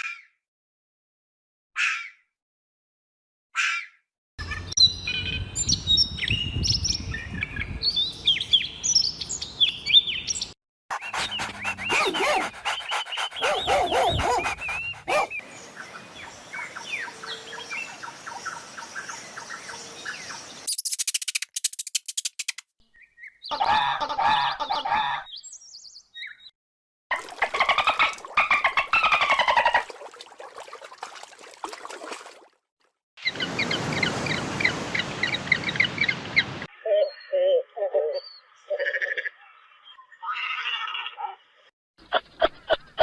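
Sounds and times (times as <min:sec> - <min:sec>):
birds chirping and trilling: 0:03.6 - 0:26.5, 0:33.2 - 0:43.0.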